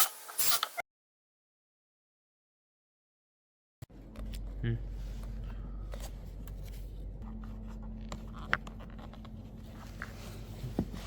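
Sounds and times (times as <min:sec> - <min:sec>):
steady low hum: 0:03.9 - 0:11.0.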